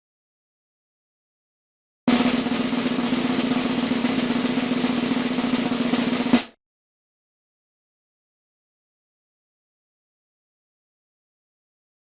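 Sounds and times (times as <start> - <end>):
sharp snare hit: 2.1 - 6.6
snare drum roll: 2.1 - 6.6.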